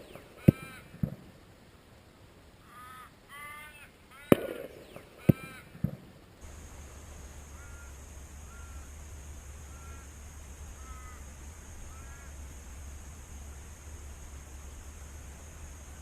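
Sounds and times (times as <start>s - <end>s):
bird calls: 0.0s - 1.3s, 2.6s - 12.7s.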